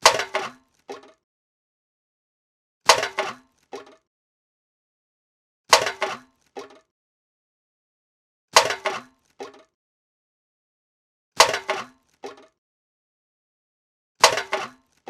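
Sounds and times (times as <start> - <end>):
can clattering into bin: 0.0 - 1.1, 2.9 - 4.0, 5.7 - 6.3, 8.6 - 9.6, 14.2 - 14.9.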